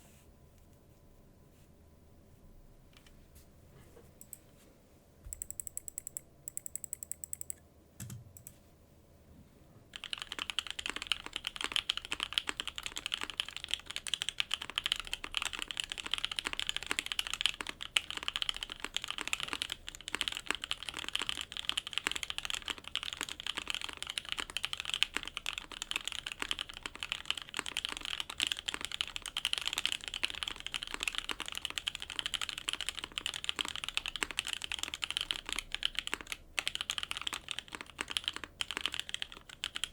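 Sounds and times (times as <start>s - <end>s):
typing on mechanical keyboard: 9.9s - 39.9s.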